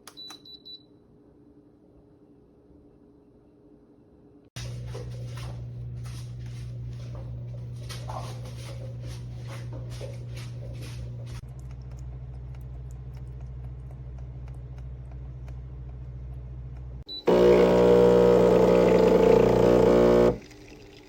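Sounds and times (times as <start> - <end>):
steady low hum: 1.2 - 20.4
espresso machine pump buzzing: 17.1 - 20.4.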